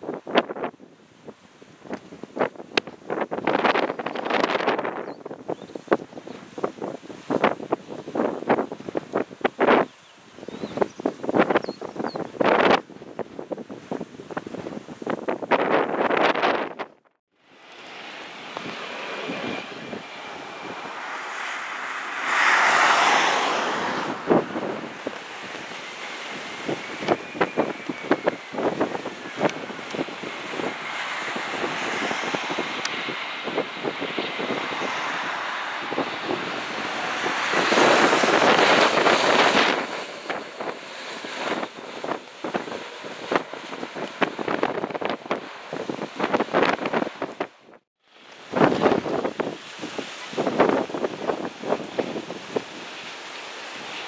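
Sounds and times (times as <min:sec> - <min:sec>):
jet airliner passing: 0:00.0 - 0:54.0
wind buffeting microphone: 0:00.0 - 0:54.0
faint high engine whine: 0:17.3 - 0:45.8.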